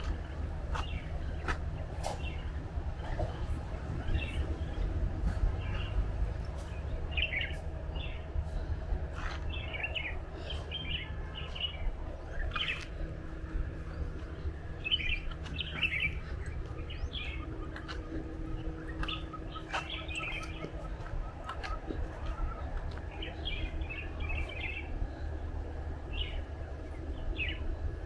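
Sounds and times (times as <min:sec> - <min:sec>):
birds chirping: 0:00.0 - 0:28.0
faint steady hum: 0:00.0 - 0:28.0
steady low rumble: 0:00.0 - 0:28.0.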